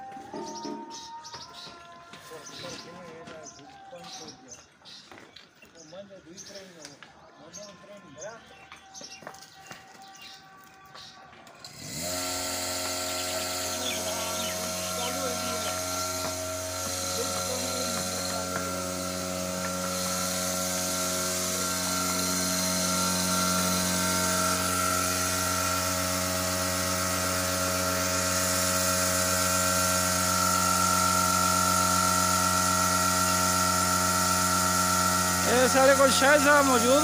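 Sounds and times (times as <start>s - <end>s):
milking machine humming: 11.5s - 37.0s.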